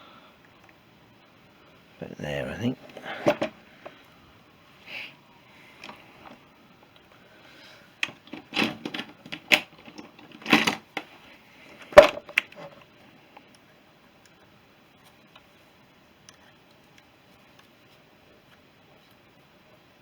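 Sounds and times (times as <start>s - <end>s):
small metal parts clicking: 8.0s - 11.0s.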